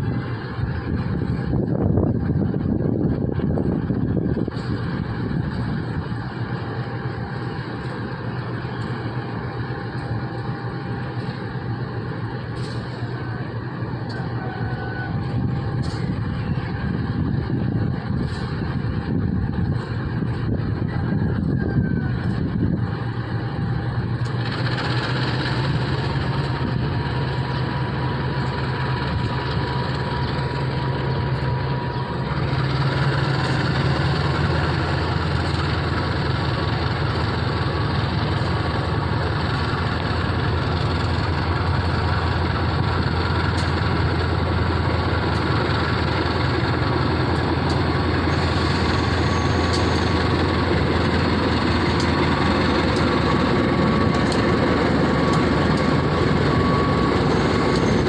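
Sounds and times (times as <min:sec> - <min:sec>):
diesel locomotive engine humming: 0:00.0 - 0:58.0.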